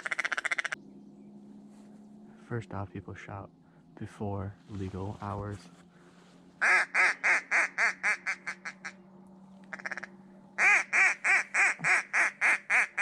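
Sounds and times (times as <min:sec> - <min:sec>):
duck call quacks: 0:00.0 - 0:00.8, 0:06.6 - 0:09.0, 0:09.7 - 0:13.0
duck call rapid chatter: 0:00.0 - 0:00.8, 0:06.6 - 0:08.9, 0:09.7 - 0:13.0.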